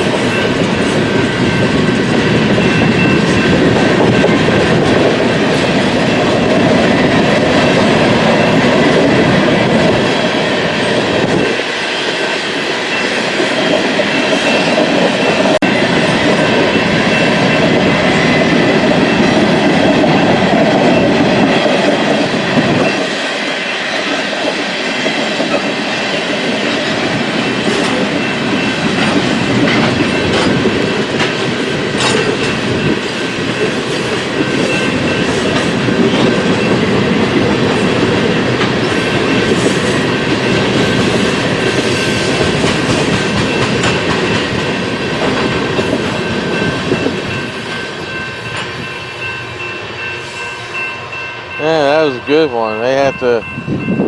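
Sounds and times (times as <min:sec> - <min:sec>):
clickety-clack over rail joints: 0:00.0 - 0:11.6, 0:13.3 - 0:48.9
train wheels rumbling on rail: 0:00.0 - 0:54.0
faint high ringing from wheels: 0:43.4 - 0:54.0.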